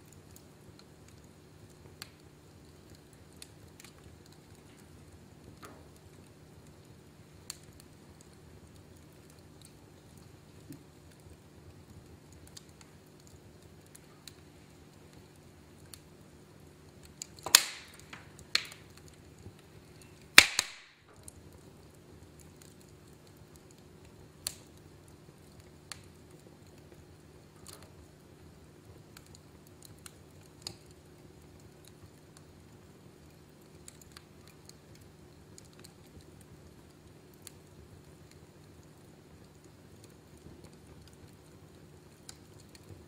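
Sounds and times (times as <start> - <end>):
wood fire crackling: 0.0 - 43.0
sharp pops of fire: 16.9 - 21.7, 22.3 - 26.2, 28.9 - 32.5.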